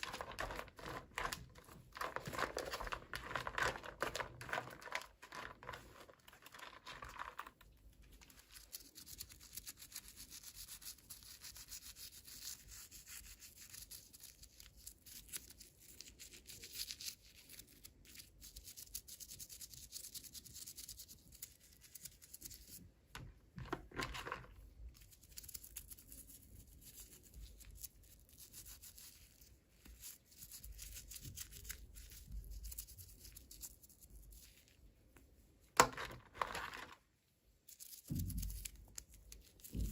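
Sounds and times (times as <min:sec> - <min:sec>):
toy packaging crinkling: 0:00.0 - 0:08.9, 0:35.8 - 0:37.0.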